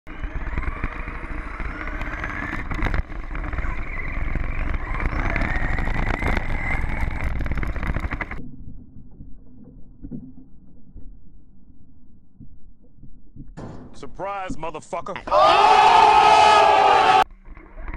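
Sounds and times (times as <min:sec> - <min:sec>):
electric motor whining: 0:00.1 - 0:08.4
rumbling tyre and chassis noise: 0:00.1 - 0:08.4.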